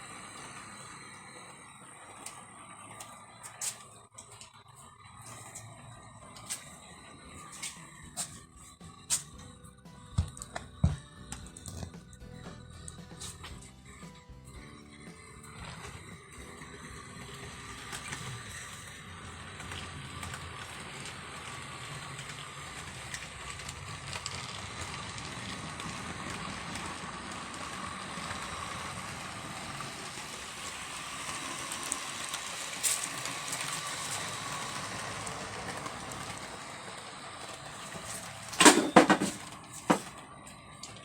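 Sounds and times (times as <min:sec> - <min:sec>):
model train rolling hum: 0:00.0 - 0:41.0
objects knocked over clattering: 0:38.5 - 0:40.2.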